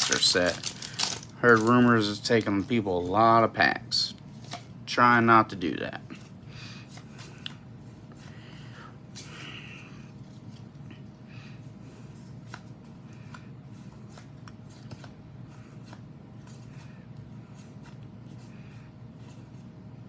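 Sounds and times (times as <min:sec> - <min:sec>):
trading cards clicking and rustling: 0:00.0 - 0:03.3, 0:12.1 - 0:16.9
steady low hum: 0:00.0 - 0:20.0.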